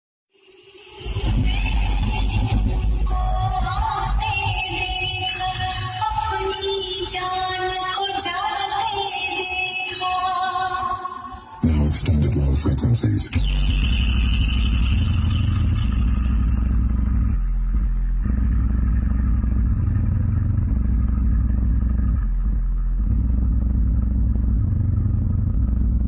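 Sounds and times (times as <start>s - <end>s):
deep bass test tones: 11.6s - 26.0s.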